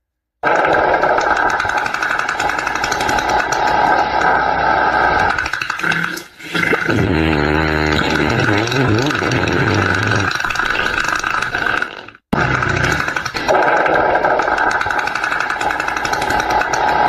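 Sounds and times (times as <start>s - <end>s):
loud noisy fart: 0.4s - 17.0s
low buzzing fart: 6.7s - 17.0s.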